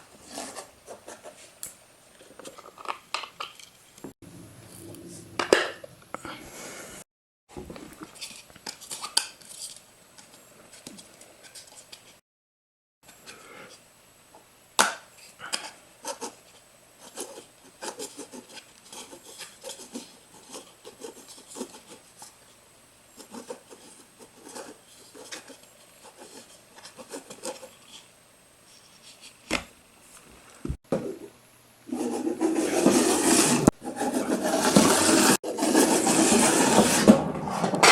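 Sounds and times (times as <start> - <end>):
plastic toy rolling and rocking: 32.0 - 37.9.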